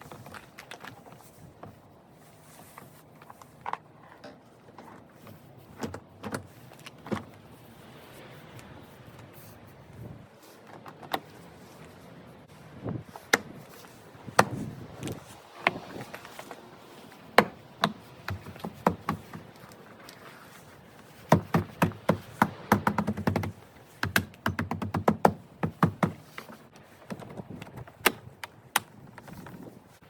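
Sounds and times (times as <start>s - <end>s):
clicks and knocks on car door: 17.4s - 19.5s, 21.3s - 26.2s.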